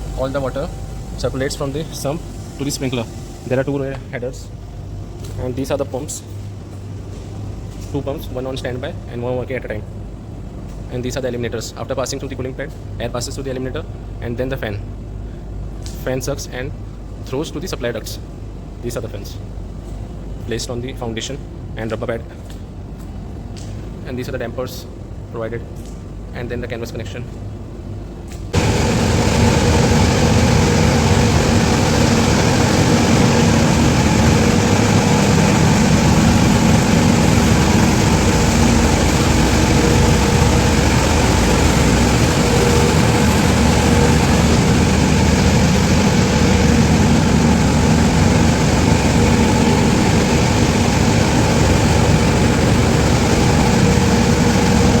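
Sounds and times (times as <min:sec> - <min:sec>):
low machine hum: 0:00.0 - 0:25.6, 0:27.4 - 0:55.0
blowers rushing air: 0:28.6 - 0:55.0.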